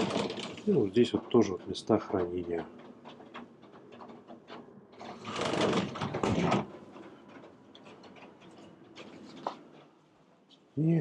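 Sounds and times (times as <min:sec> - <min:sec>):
door scraping and rattling: 0:00.0 - 0:10.0.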